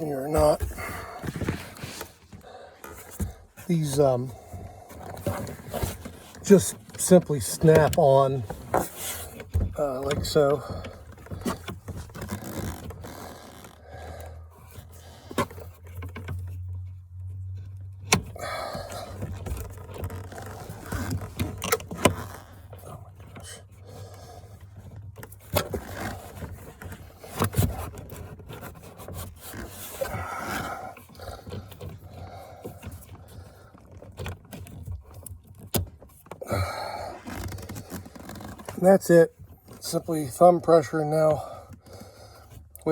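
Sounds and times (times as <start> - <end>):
scraping and handling of parts: 0.0 - 13.6.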